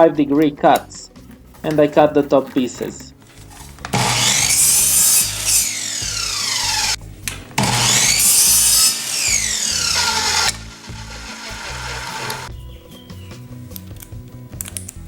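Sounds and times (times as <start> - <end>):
faint background music: 0.0 - 8.9, 10.5 - 15.0
miter saw cutting wood: 3.9 - 7.0, 7.6 - 12.5
light clicks: 13.7 - 15.0.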